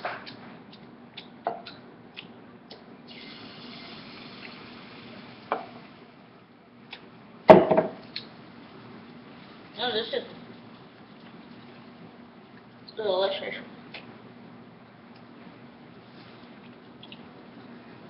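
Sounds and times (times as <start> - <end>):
soft hiss: 3.1 - 7.0
loud thump: 7.5 - 8.0.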